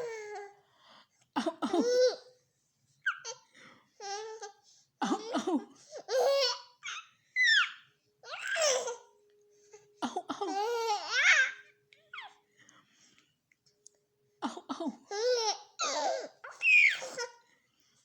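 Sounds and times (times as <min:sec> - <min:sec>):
baby laughing: 0:06.0 - 0:09.1, 0:10.0 - 0:12.4, 0:14.6 - 0:17.4
baby squealing: 0:06.1 - 0:09.0, 0:15.1 - 0:17.4.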